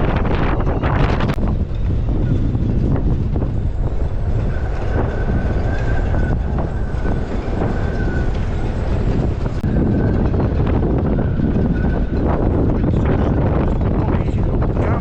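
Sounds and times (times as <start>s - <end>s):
gusty wind buffeting microphone: 0.0s - 15.0s
thin high whistle: 4.3s - 10.2s.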